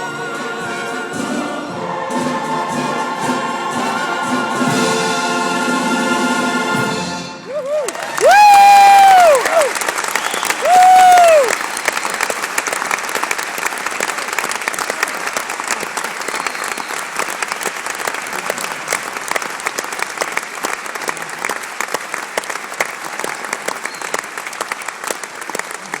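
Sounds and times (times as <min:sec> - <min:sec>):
audience applauding: 0:07.4 - 0:26.0.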